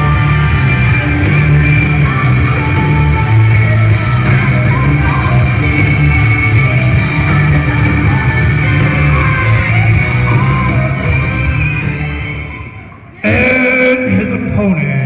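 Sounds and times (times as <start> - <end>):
rock song with singing: 0.0 - 14.6.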